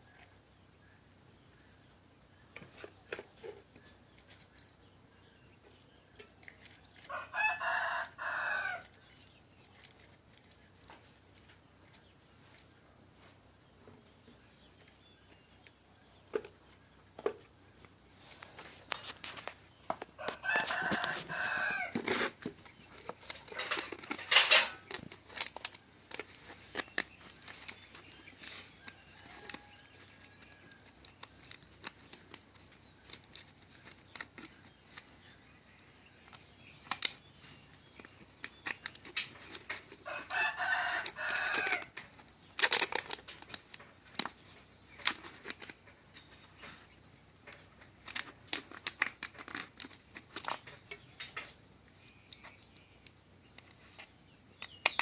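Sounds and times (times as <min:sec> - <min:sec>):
rooster crowing: 0:07.1 - 0:08.9, 0:20.2 - 0:22.0, 0:28.8 - 0:30.8, 0:40.0 - 0:41.9.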